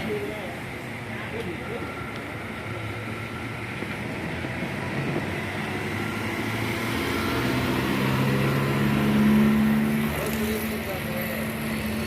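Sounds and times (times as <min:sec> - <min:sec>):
bus engine droning: 0:00.0 - 0:12.0.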